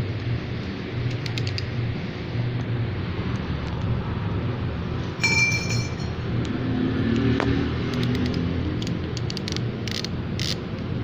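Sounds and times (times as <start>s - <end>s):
steady low rumble: 0.0s - 11.0s
metal clink with ring: 5.2s - 6.2s
tools clicking: 7.9s - 10.6s.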